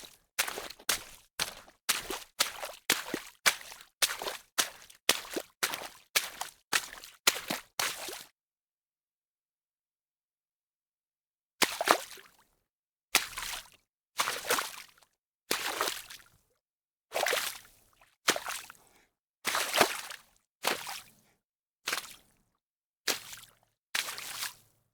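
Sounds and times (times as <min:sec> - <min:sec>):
footsteps splashing in shallow water: 0:00.0 - 0:08.2, 0:13.2 - 0:14.9, 0:15.6 - 0:16.2, 0:17.2 - 0:17.4, 0:18.3 - 0:18.7, 0:19.5 - 0:21.0, 0:21.9 - 0:22.2, 0:23.1 - 0:24.6.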